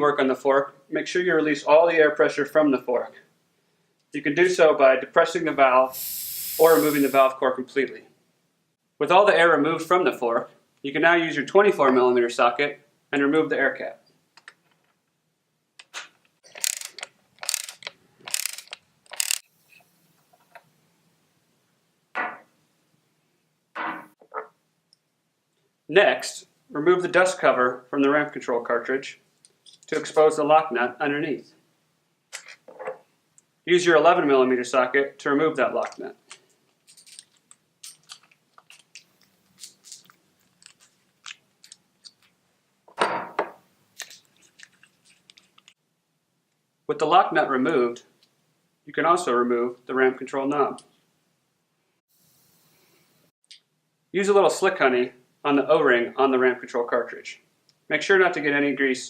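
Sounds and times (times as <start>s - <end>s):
ratchet wrench clicking: 6.0s - 7.2s, 16.6s - 19.5s
metal parts clattering: 16.5s - 19.4s, 36.8s - 42.2s.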